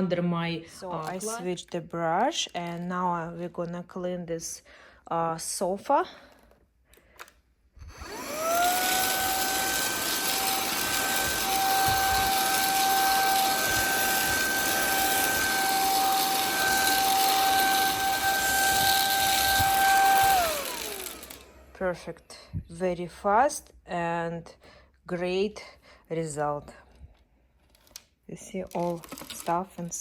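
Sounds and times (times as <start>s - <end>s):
vacuum cleaner motor whine: 7.8s - 21.8s.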